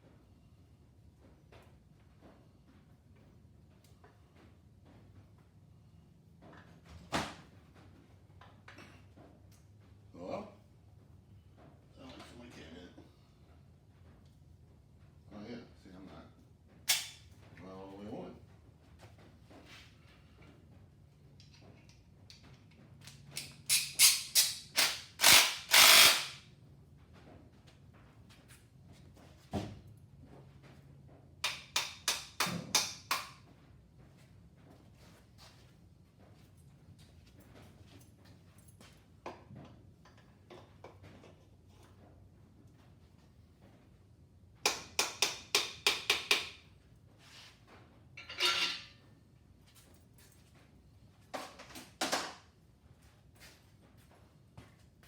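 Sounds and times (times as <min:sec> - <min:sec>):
ratchet wrench clicking strokes: 0:23.4 - 0:26.4.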